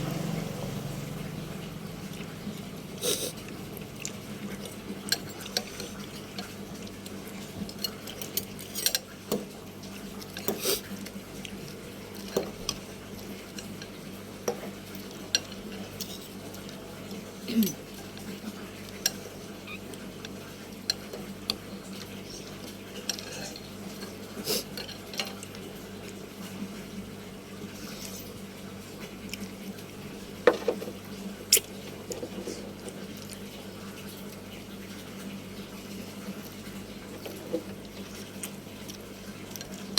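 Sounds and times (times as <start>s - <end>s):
steady low hum: 0.0s - 4.5s
metal utensils clinking on dishware: 7.7s - 9.1s, 15.0s - 16.5s, 23.0s - 24.2s
tableware knocks: 30.5s - 30.9s.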